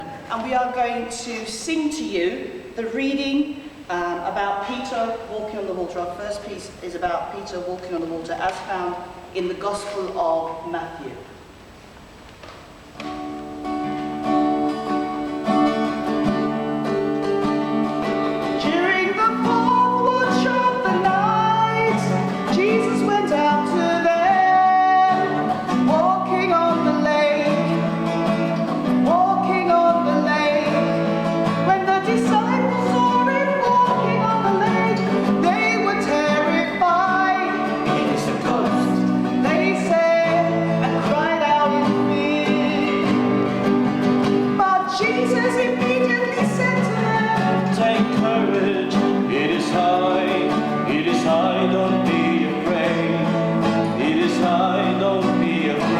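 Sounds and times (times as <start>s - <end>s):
person singing: 18.3s - 55.9s.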